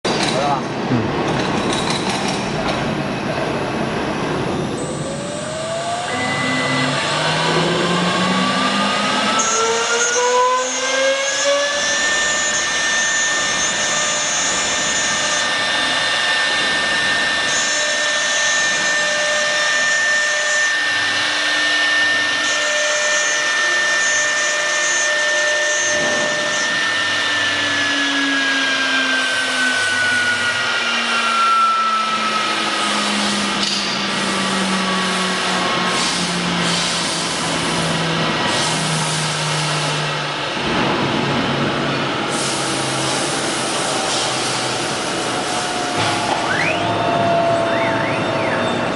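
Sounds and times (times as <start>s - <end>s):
router spindle motor whining: 4.7s - 40.2s.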